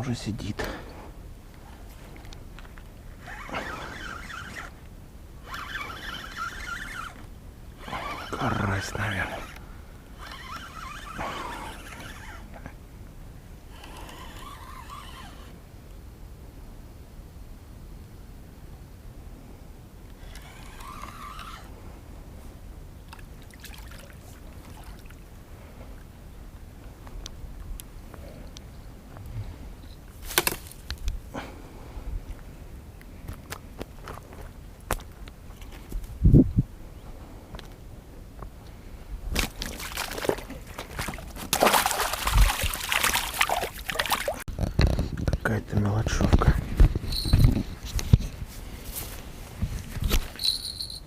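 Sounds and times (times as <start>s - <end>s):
water trickling and splashing: 23.4s - 25.2s, 39.4s - 44.5s.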